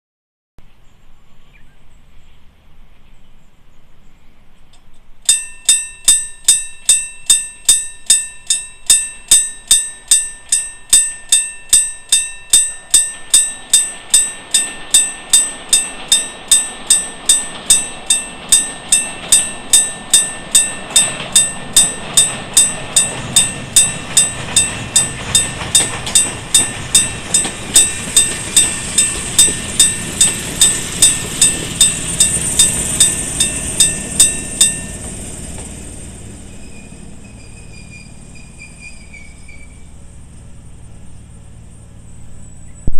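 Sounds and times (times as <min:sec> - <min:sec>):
approaching train running noise: 0:00.7 - 0:42.9
level crossing warning bell: 0:05.3 - 0:38.8.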